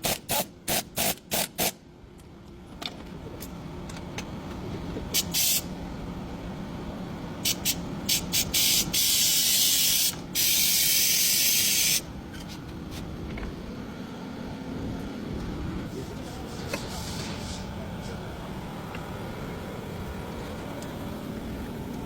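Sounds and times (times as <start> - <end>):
aerosol spray can hissing: 7.5 - 12.0
steady low rumble: 12.0 - 22.0.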